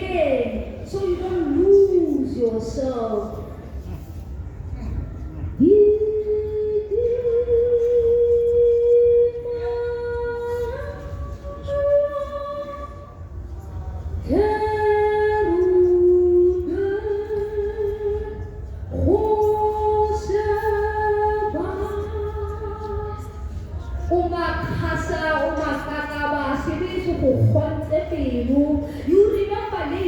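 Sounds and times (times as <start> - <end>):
woman singing unaccompanied: 5.6 - 13.1, 14.2 - 23.4.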